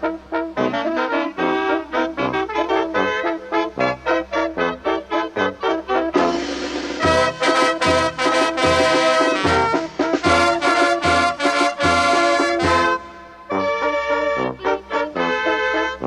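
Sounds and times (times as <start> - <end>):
brass band playing: 0.0 - 16.0
cymbal crash: 6.2 - 10.6.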